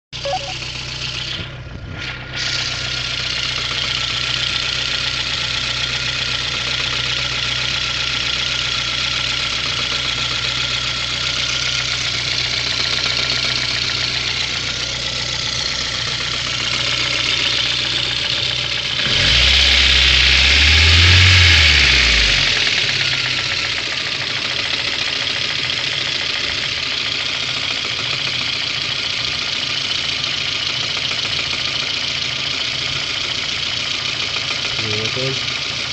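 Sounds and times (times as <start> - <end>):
car engine idling and revving: 0.2 - 35.9.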